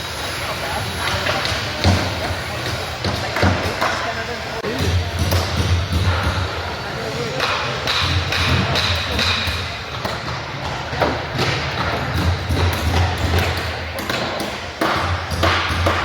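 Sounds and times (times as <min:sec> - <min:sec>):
tools knocking on lumber: 0:07.4 - 0:16.0.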